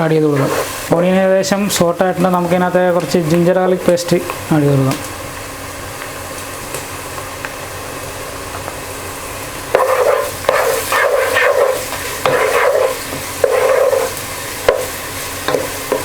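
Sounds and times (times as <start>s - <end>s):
onions sizzling in hot oil: 0.0s - 16.0s
stirring in a pan: 9.6s - 16.0s.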